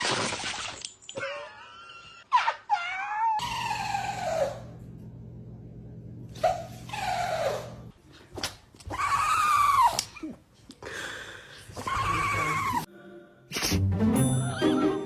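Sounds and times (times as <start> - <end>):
animal wailing cries: 2.2 - 4.7
low steady hum: 4.6 - 6.4.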